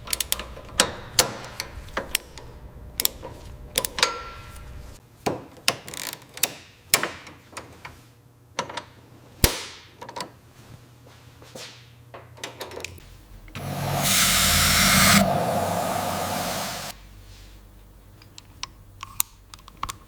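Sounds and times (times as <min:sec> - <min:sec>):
power tool whirring: 0:13.6 - 0:17.0.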